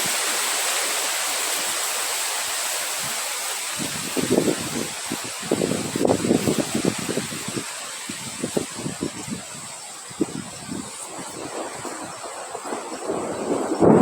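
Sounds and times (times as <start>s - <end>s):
wind blowing: 2.4s - 14.0s
wind gusts buffeting microphone: 3.0s - 14.0s.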